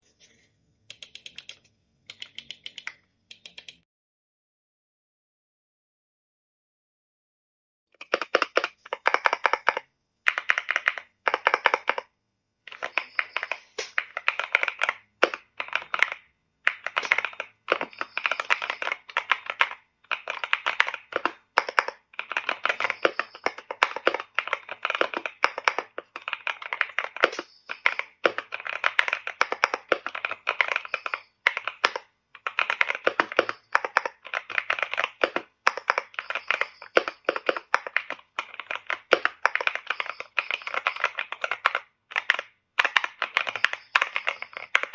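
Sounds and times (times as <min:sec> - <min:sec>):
mechanical keyboard typing: 0:00.9 - 0:03.8, 0:08.0 - 0:12.1, 0:12.7 - 0:44.9.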